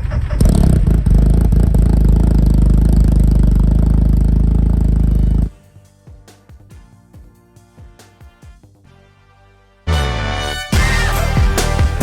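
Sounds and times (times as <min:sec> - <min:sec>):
race car engine running: 0:00.0 - 0:05.5.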